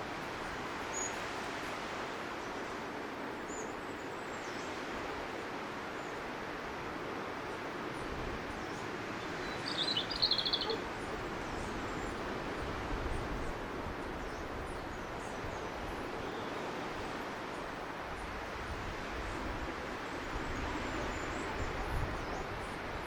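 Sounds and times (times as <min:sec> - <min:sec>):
robin singing: 0:09.2 - 0:10.8
faint high chirps: 0:09.5 - 0:10.8.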